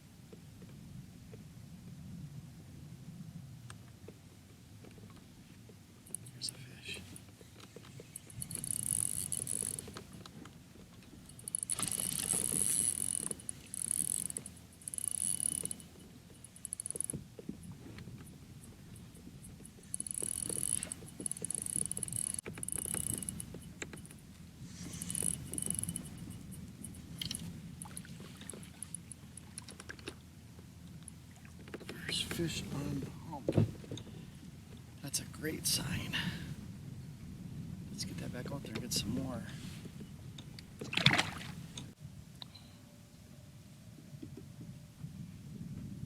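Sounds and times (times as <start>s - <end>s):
water and kayak hull noise: 3.7s - 36.9s, 37.6s - 42.0s
fishing reel whirring: 7.8s - 10.1s, 11.2s - 17.2s, 19.8s - 24.1s, 24.7s - 28.1s.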